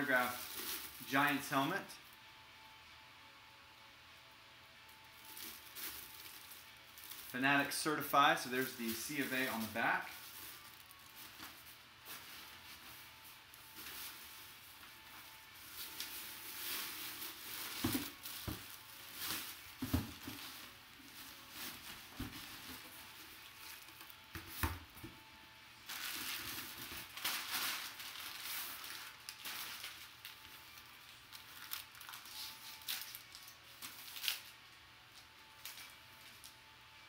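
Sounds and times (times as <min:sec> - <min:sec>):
packaging crumpling and tearing: 0:05.2 - 0:07.7, 0:08.6 - 0:12.3, 0:25.9 - 0:34.6.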